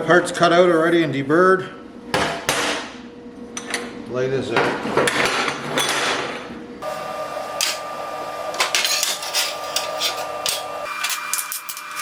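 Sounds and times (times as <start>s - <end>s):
steady hum: 0.0s - 12.0s
steel tubes sliding and clanking: 8.6s - 12.0s.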